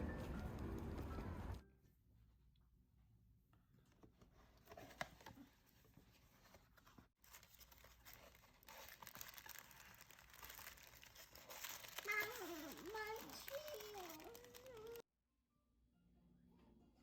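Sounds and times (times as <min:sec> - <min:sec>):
faint rustling and crinkling: 0:03.7 - 0:15.0.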